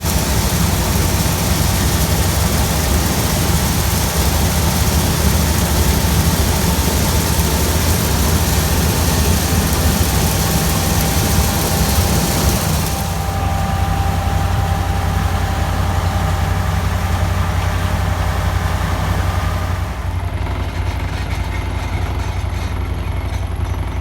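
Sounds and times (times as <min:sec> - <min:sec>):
faint steady whine: 0:00.0 - 0:20.2
machinery hiss: 0:00.0 - 0:20.2
combine harvester engine drone: 0:00.0 - 0:24.0.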